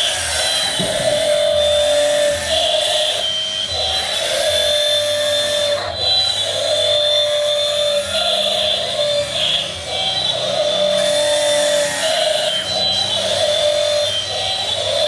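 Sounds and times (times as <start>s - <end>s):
electric motors whining: 0.0s - 15.0s.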